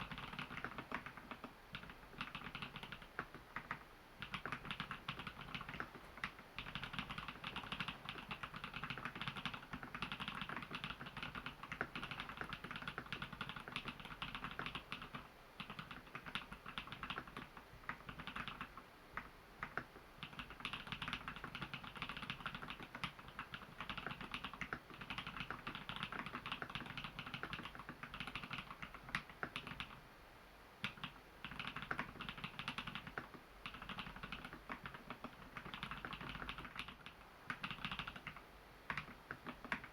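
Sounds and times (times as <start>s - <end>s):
mechanical keyboard typing: 0.0s - 30.0s, 30.8s - 39.9s.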